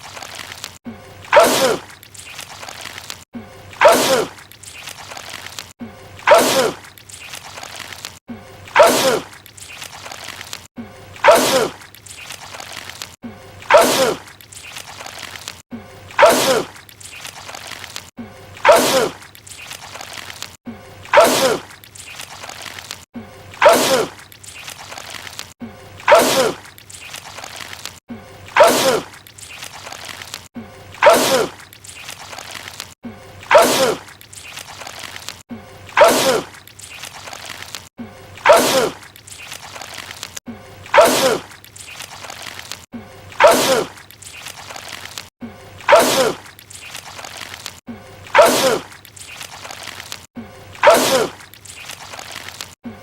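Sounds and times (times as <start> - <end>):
man sneezing loudly: 48.4 - 48.9, 50.8 - 51.4.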